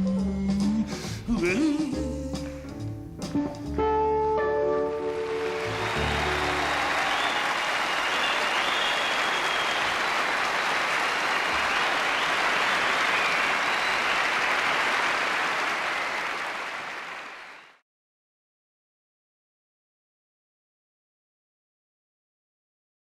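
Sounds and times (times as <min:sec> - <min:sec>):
audience applauding: 0:04.8 - 0:17.8.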